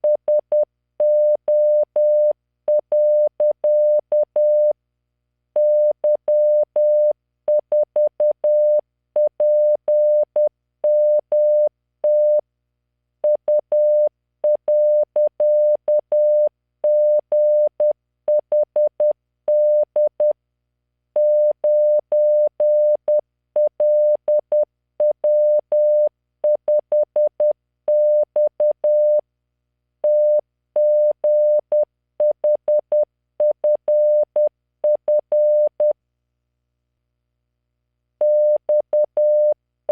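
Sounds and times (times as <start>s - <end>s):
morse code beeps: 30.1s - 35.9s, 38.2s - 39.6s.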